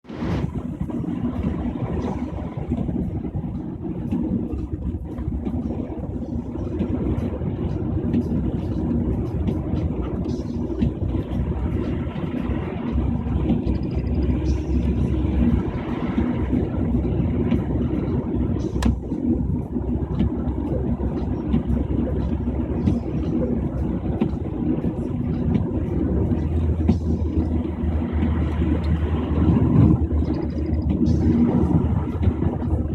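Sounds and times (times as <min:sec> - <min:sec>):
car rumbling on highway: 0:00.0 - 0:32.9.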